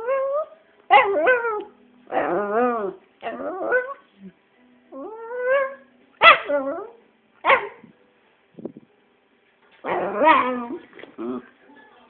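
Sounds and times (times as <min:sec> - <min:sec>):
dog whining: 0:00.0 - 0:04.3, 0:04.9 - 0:07.0, 0:09.8 - 0:11.5
dog yelping barks: 0:00.9 - 0:01.5, 0:05.6 - 0:06.7, 0:07.4 - 0:07.8, 0:09.9 - 0:10.7
dog grumbling: 0:09.9 - 0:11.6.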